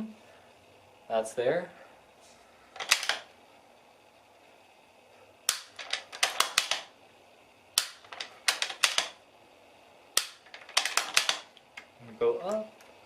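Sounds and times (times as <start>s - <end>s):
sharp clicks and rattles: 2.8s - 3.3s, 5.5s - 6.9s, 7.8s - 9.2s, 10.2s - 12.9s.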